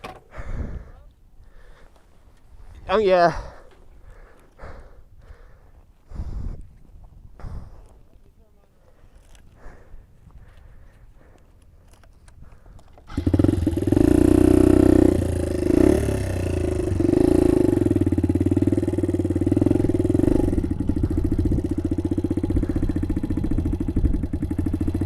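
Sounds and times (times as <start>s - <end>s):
small motorbike engine running: 13.0s - 25.0s.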